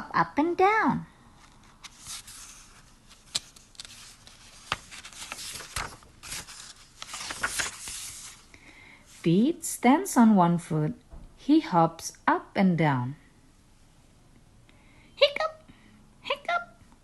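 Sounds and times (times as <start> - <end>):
paper pages rustling: 1.4 - 8.5.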